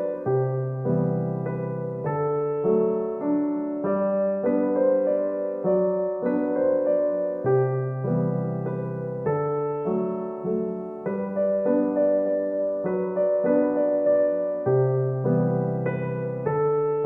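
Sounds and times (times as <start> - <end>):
soft piano music: 0.0 - 17.0.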